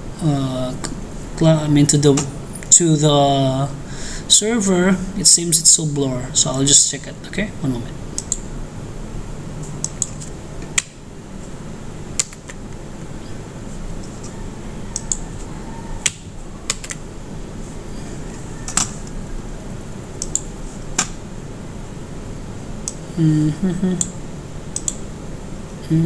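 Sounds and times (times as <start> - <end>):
computer fans humming: 0.0 - 26.0
keyboard and mouse clicks: 8.2 - 8.5, 9.6 - 11.0, 12.2 - 12.6, 14.0 - 15.3, 18.7 - 19.2, 20.2 - 21.2, 24.0 - 25.0.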